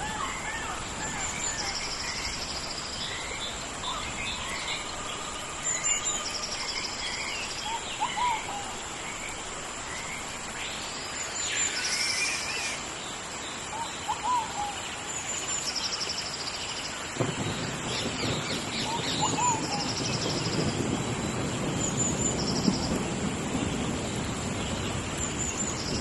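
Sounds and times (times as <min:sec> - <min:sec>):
rain hissing: 0:00.0 - 0:26.0
birds chirping and whistling: 0:11.3 - 0:12.8, 0:17.4 - 0:20.8.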